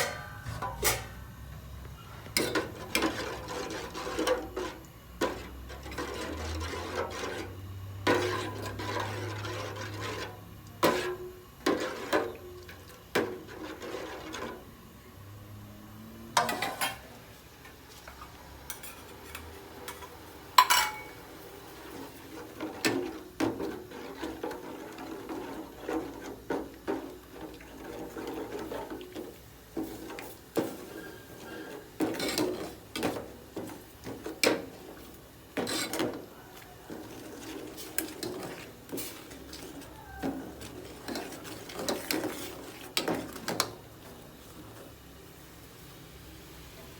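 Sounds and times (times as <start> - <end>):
spoon clinking against cooking pot: 20.6 - 21.2.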